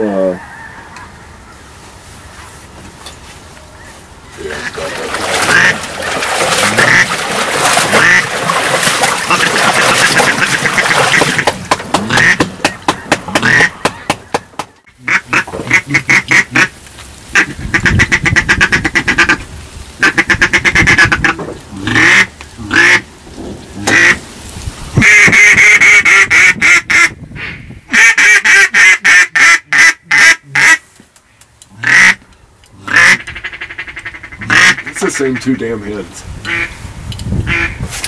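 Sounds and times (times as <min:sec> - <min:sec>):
duck quacking: 0:04.5 - 0:14.1, 0:15.0 - 0:16.7, 0:17.3 - 0:19.4, 0:20.0 - 0:23.0, 0:23.8 - 0:24.2, 0:25.0 - 0:27.1, 0:27.9 - 0:30.8, 0:31.8 - 0:32.2, 0:32.8 - 0:35.6, 0:36.5 - 0:36.8, 0:37.5 - 0:37.8.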